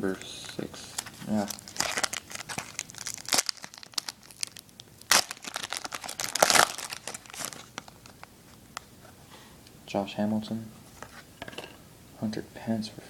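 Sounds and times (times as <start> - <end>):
wrapper tearing and crinkling: 0.9 - 8.3.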